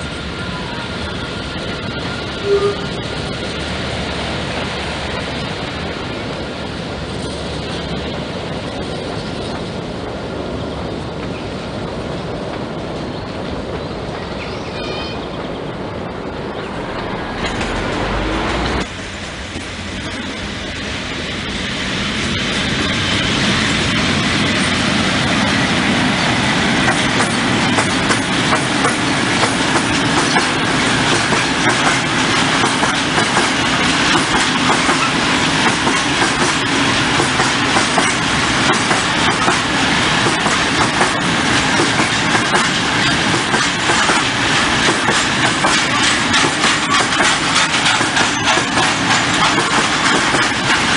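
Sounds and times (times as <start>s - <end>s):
train wheels clattering over rails: 16.5s - 50.9s.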